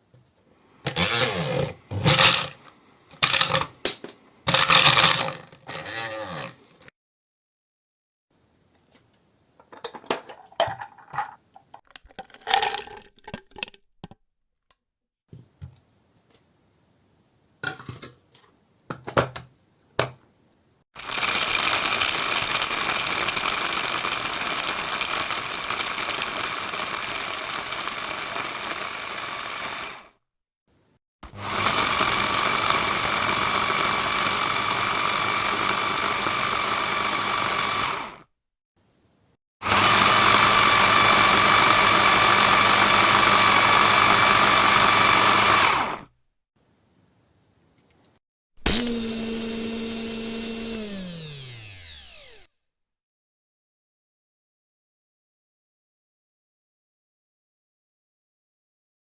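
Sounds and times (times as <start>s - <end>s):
clicks knocks and clatter: 9.6s - 14.2s
electric hand mixer whining: 21.0s - 30.1s, 31.2s - 38.2s, 39.6s - 46.1s, 48.6s - 52.5s.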